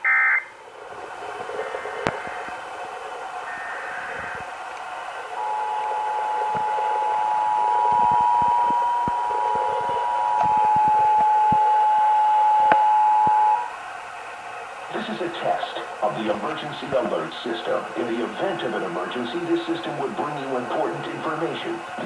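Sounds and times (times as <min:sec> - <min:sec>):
radio hiss with crackle: 0:00.0 - 0:22.0
two-tone alert signal: 0:05.4 - 0:13.7.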